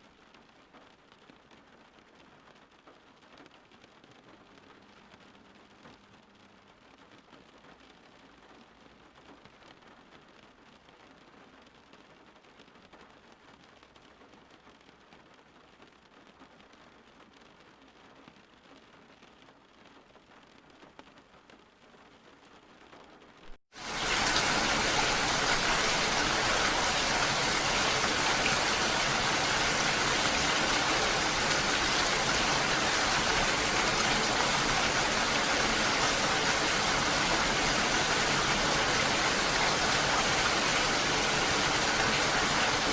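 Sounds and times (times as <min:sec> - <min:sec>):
heavy rainfall: 0:22.8 - 0:42.9.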